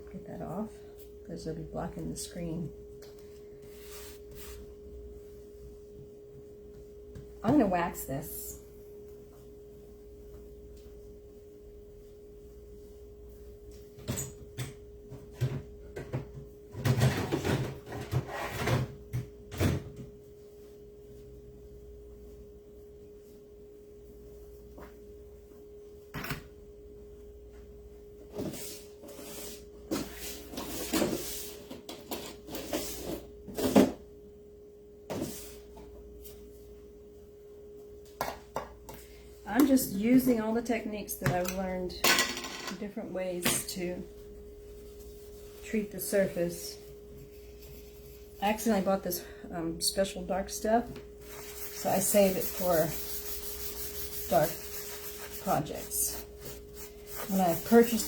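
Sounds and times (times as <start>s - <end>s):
steady hum: 0.0s - 17.0s, 18.8s - 58.0s
rubbing wax on cutting board: 51.2s - 58.0s.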